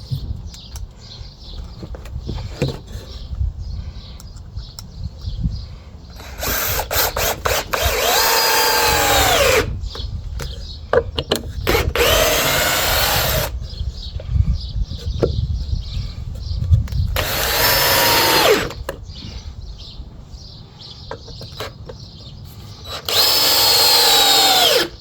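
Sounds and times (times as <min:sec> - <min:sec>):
power drill whining: 0:06.2 - 0:09.7, 0:11.6 - 0:13.6, 0:17.2 - 0:18.9, 0:22.8 - 0:25.0.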